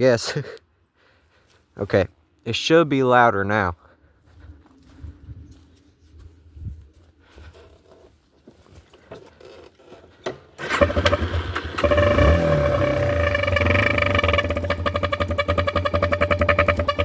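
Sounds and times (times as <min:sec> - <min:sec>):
faint scraping and handling: 0:04.3 - 0:10.2
dirt bike engine: 0:09.5 - 0:17.0
air horn honking: 0:11.8 - 0:17.0.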